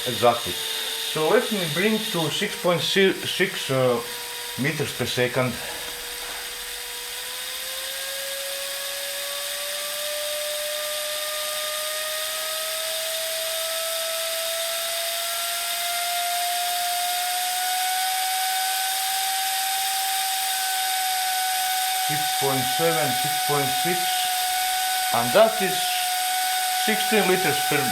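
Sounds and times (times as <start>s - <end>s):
compressed air hissing and whistling: 0.0s - 7.8s, 18.0s - 27.9s.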